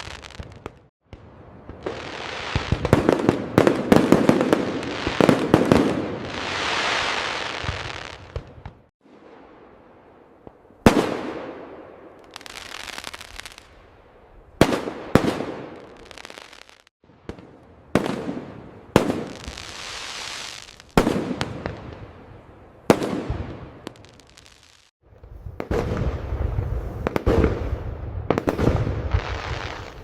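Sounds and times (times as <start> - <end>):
firework hiss and crackle: 0.0 - 0.9, 1.7 - 8.7, 12.2 - 13.8, 15.3 - 16.9, 19.0 - 22.0, 23.1 - 30.0.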